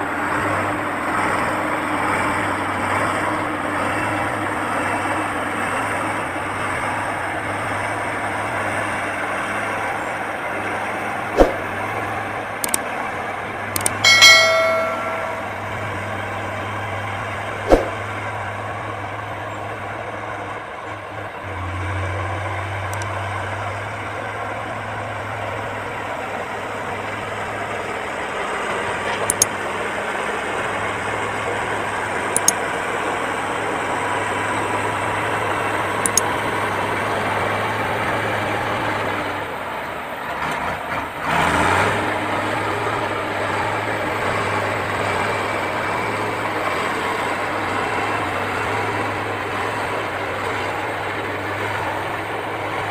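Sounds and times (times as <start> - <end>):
heavy machinery diesel engine: 0.0 - 52.9
ringing metallic clang: 14.0 - 15.9
sharp knocks: 14.1 - 15.6, 17.7 - 17.9.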